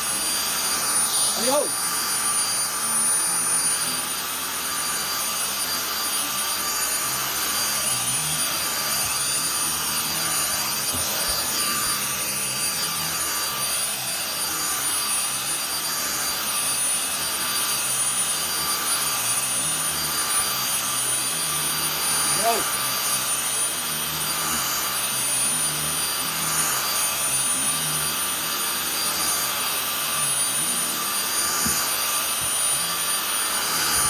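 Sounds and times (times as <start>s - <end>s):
vacuum suction with high whine: 0.0s - 34.0s.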